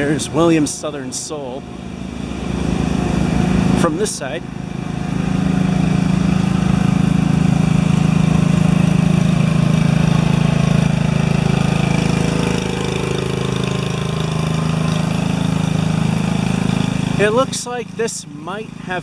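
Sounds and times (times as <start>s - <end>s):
engine idling: 0.0s - 19.0s.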